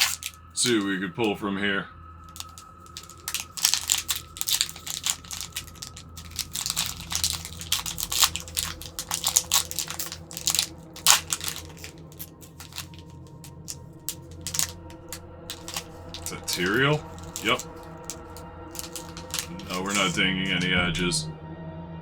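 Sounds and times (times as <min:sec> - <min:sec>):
foil wrapper crinkling and tearing: 0:00.0 - 0:00.9, 0:02.3 - 0:20.7.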